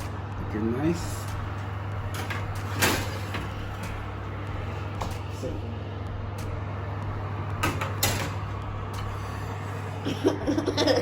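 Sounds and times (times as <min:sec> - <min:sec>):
steady low hum: 0:00.0 - 0:11.0
metal pans clanking on oven rack: 0:02.1 - 0:04.0, 0:07.6 - 0:08.5.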